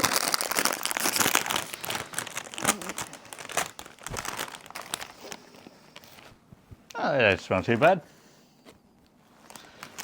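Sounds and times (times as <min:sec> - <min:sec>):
plastic packet crinkling: 0:00.0 - 0:06.2, 0:09.4 - 0:10.0.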